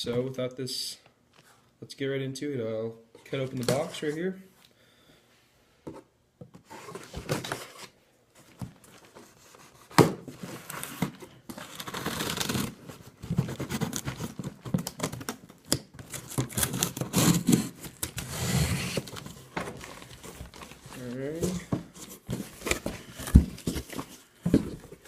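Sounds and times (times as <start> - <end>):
tape slitting and ripping: 11.6 - 12.8
cardboard flaps scraping and crinkling: 16.1 - 25.0.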